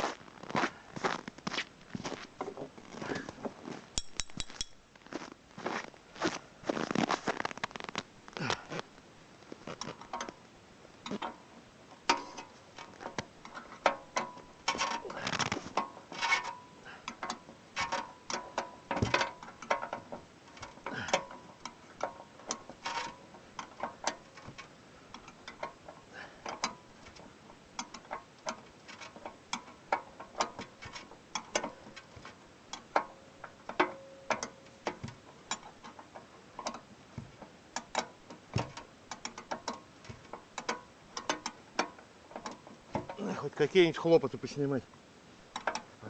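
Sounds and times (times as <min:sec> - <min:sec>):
hand tools clicking on metal: 0:13.1 - 0:27.2.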